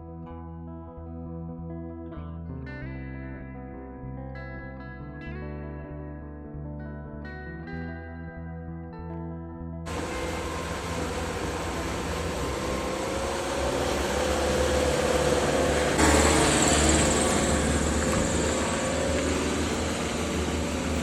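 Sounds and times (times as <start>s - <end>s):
motor engine running: 9.9s - 21.0s
steady rushing noise: 9.9s - 21.0s.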